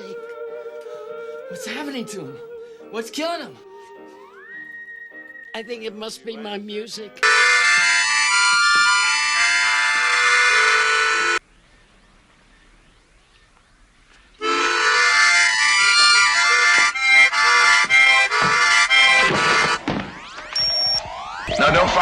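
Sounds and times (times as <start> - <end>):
reedy accordion-like music: 7.2 - 11.4, 14.4 - 19.8.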